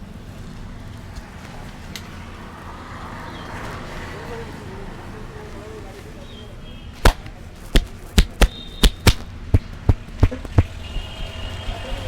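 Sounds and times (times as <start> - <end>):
hands smacking head: 7.0 - 12.0.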